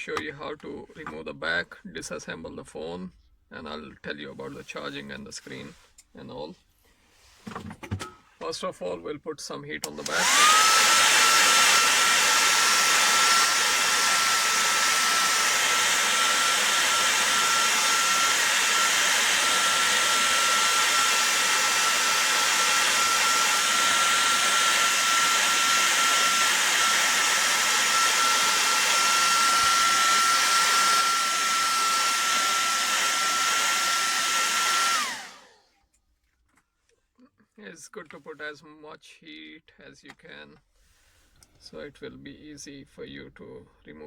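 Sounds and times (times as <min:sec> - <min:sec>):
hot-air blower whining: 0:09.8 - 0:35.6.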